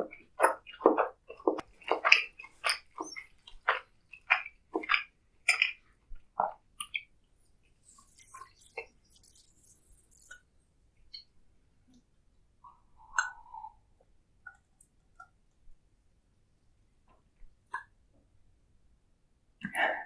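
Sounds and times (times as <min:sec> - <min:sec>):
wet chewing: 0:00.1 - 0:07.1.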